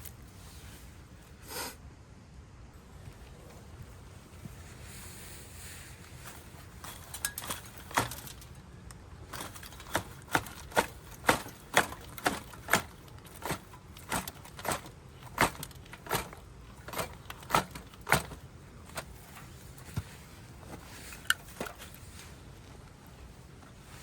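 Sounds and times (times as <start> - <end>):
firewood being chopped: 9.2 - 22.0.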